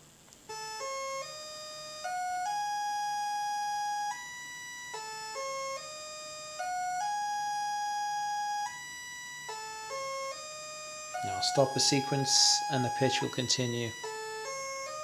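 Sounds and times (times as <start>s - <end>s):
synthesizer sequenced tone pattern: 11.2s - 14.3s.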